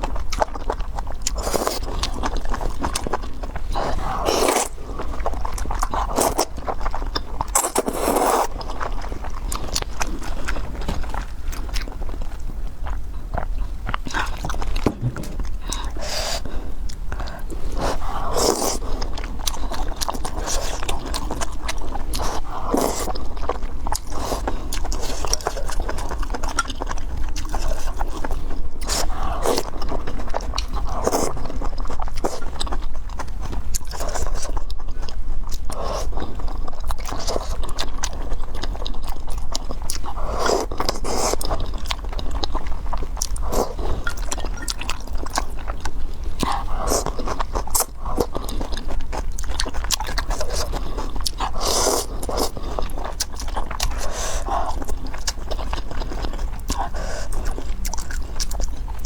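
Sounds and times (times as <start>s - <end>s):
steady low hum: 0.0s - 34.0s
biting and chewing: 0.0s - 59.0s.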